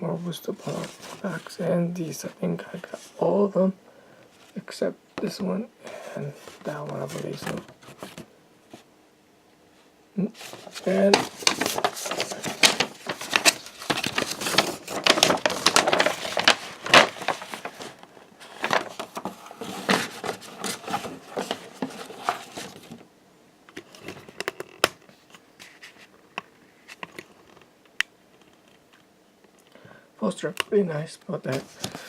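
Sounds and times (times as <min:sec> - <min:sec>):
packaging crinkling and rustling: 0:06.4 - 0:08.8, 0:10.4 - 0:23.1, 0:31.4 - 0:32.0.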